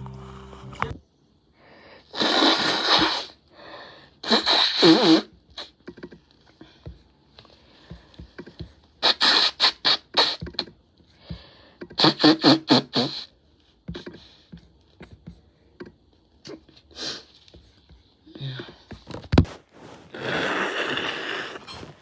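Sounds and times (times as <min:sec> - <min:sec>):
nose blowing wetly: 0:02.1 - 0:03.4, 0:09.0 - 0:10.6, 0:12.0 - 0:13.3.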